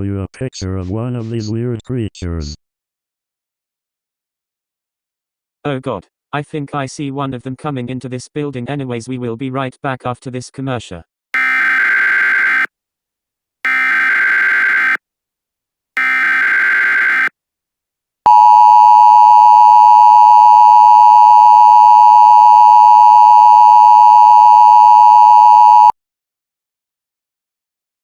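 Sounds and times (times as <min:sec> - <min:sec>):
harsh digital data bursts: 0:11.4 - 0:12.7, 0:13.7 - 0:15.0, 0:16.0 - 0:17.3.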